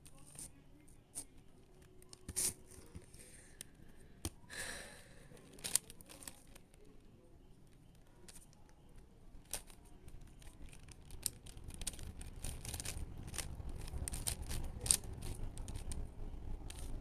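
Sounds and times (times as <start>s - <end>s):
puzzle cube clicking: 5.4s - 6.8s, 8.1s - 17.0s.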